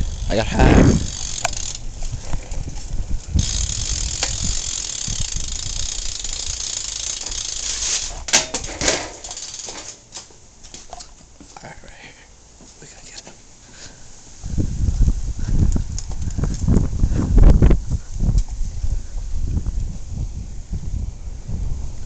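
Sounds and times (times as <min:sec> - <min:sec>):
bicycle freewheel ticking: 0:00.0 - 0:10.0.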